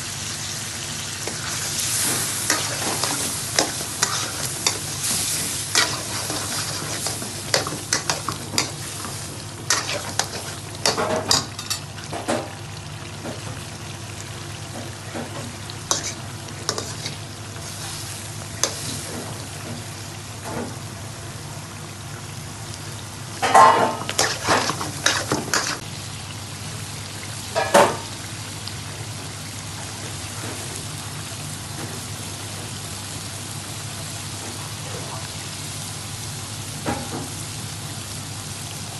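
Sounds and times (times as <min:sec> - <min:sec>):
food sizzling in a pan: 0:00.0 - 0:38.9
utensil scraping a pan: 0:02.0 - 0:11.8, 0:15.9 - 0:17.2.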